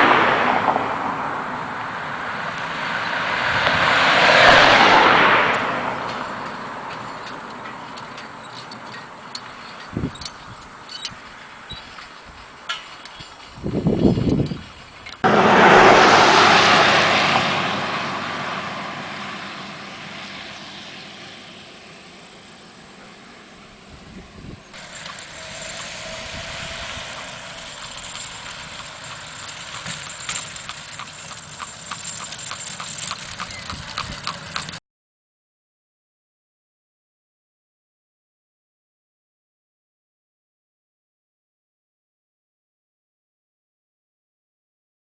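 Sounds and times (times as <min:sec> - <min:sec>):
horse hooves clopping: 0:00.0 - 0:20.5, 0:24.6 - 0:34.8
loud rushing noise: 0:15.2 - 0:21.8, 0:24.8 - 0:28.0.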